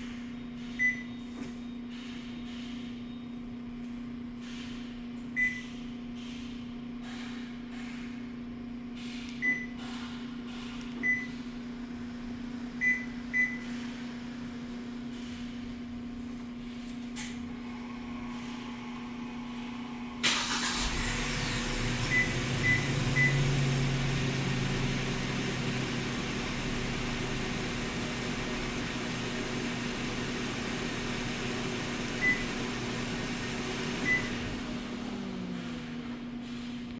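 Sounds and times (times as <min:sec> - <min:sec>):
truck engine starting and idling: 0:17.6 - 0:36.9.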